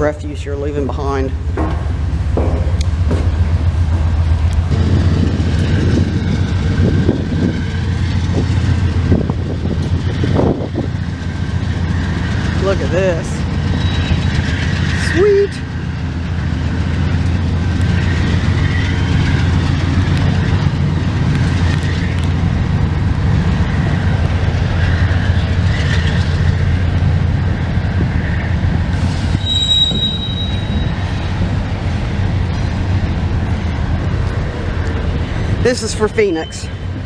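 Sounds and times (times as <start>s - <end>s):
train rumbling past: 0.0s - 37.0s
train wheels squealing: 13.6s - 15.7s, 29.0s - 31.4s, 36.2s - 36.9s.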